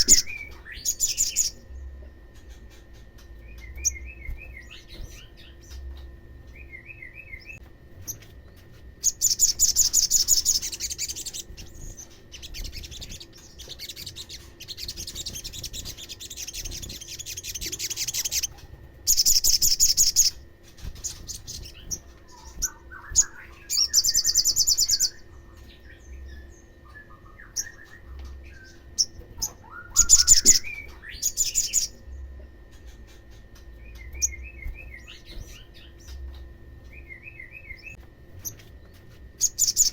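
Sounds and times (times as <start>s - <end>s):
bird trilling: 0.0s - 1.6s, 9.0s - 25.3s, 27.0s - 32.0s
bird chirps: 0.0s - 39.9s.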